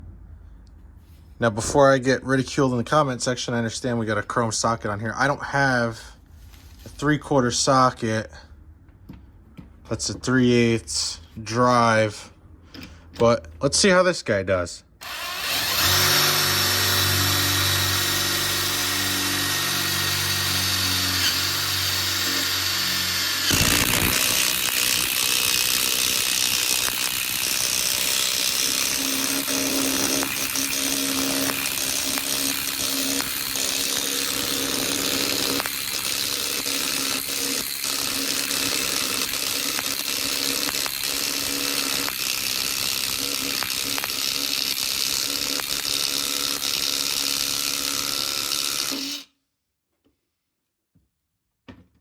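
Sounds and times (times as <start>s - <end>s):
impact wrench hammering: 15.0s - 49.2s
impact wrench motor whine: 15.0s - 49.3s.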